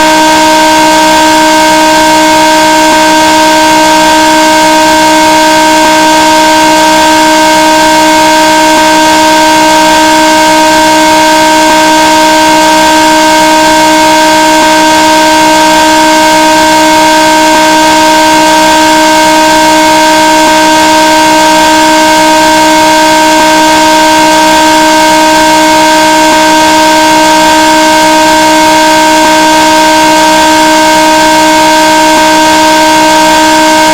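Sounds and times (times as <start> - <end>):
harsh distorted chord: 0.0 - 33.9.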